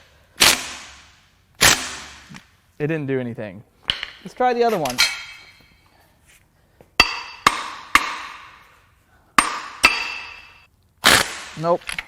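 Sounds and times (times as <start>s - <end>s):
hammer striking metal: 7.0s - 8.7s, 9.4s - 10.7s.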